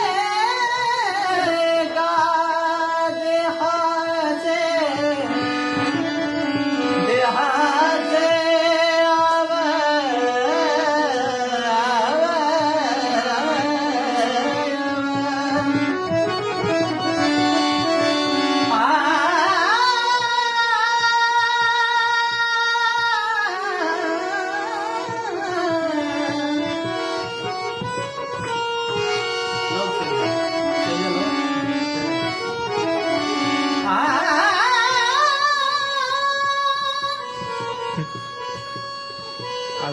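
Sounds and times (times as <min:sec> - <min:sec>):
man singing in a high voice: 0:00.0 - 0:26.9, 0:29.7 - 0:38.3
harmonium: 0:00.0 - 0:39.9
hand drum: 0:34.1 - 0:39.5.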